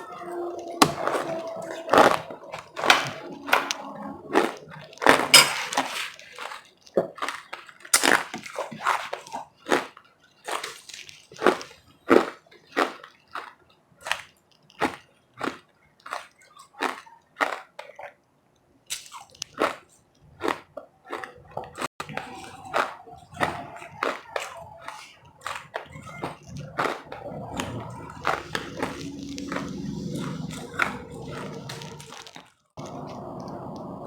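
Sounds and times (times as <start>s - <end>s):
chewing ice crunches: 0.0s - 33.8s.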